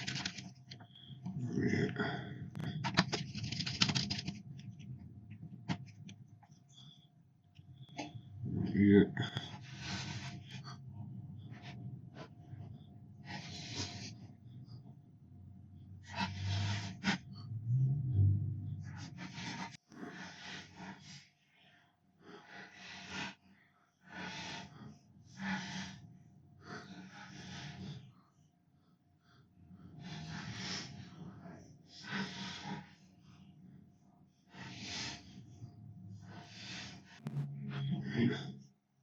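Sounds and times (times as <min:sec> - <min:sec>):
faint steady hum: 0:00.0 - 0:19.8
person breathing: 0:09.2 - 0:14.6, 0:16.1 - 0:23.4.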